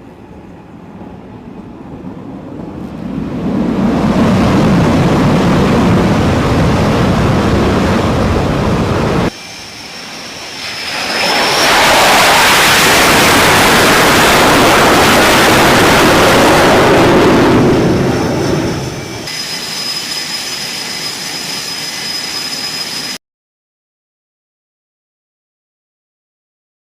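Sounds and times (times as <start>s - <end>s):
jet engine deep rumble: 0.0s - 19.5s
jet engine high whine: 0.0s - 23.2s.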